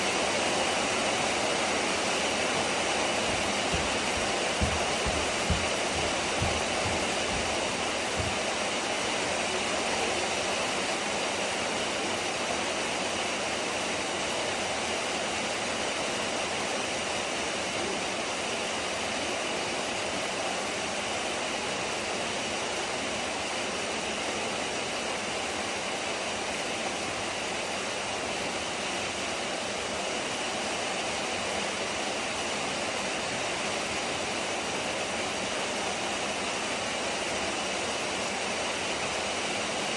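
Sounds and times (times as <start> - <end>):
rain on a metal roof: 0.0 - 39.9
low thuds: 3.2 - 8.6.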